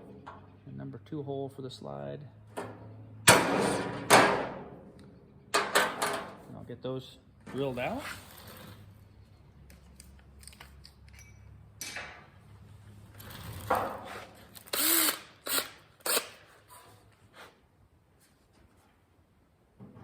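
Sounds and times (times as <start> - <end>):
knocks on tools and tailgate: 2.6 - 4.8, 5.5 - 6.4
power drill bursts: 14.6 - 16.4.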